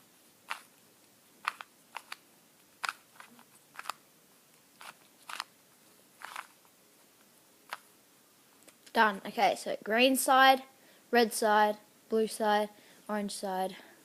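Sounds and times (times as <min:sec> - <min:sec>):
puzzle cube clicking: 0:00.5 - 0:00.7, 0:01.4 - 0:04.0, 0:04.8 - 0:05.5, 0:06.2 - 0:06.6.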